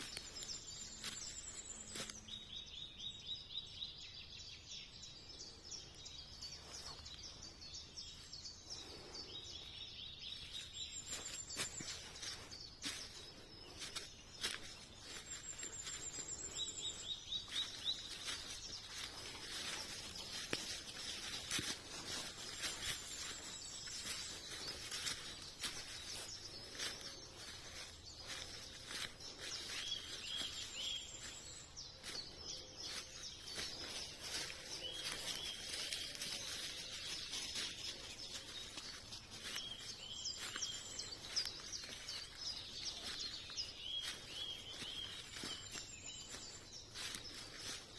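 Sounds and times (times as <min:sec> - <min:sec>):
birds singing trills: 0:00.0 - 0:47.9.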